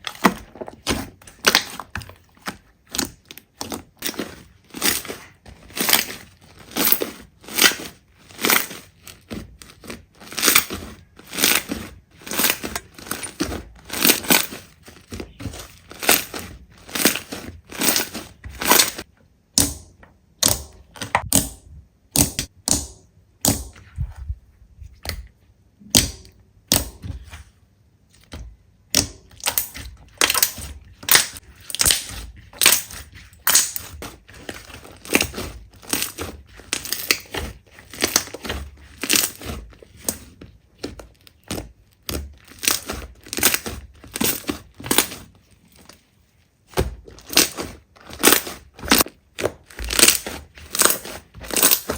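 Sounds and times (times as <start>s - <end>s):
slime crackling crunches: 0.0s - 19.1s, 28.9s - 46.1s, 46.7s - 51.9s.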